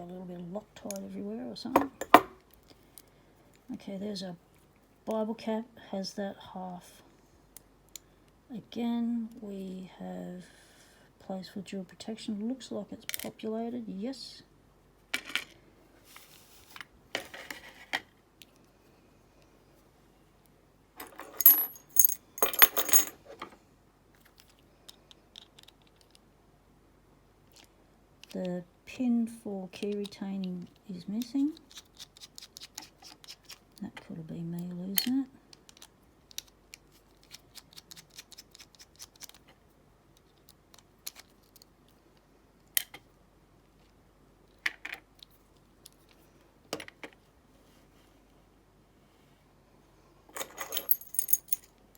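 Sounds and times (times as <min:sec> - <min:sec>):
padlock parts clinking and rattling: 0:21.0 - 0:23.2, 0:40.2 - 0:41.8, 0:50.3 - 0:51.8.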